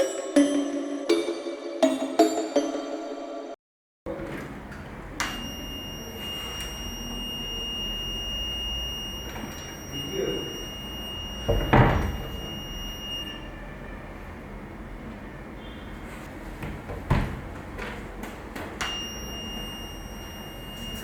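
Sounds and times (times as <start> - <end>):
alarm buzzer tone: 5.2 - 13.7, 18.8 - 21.0.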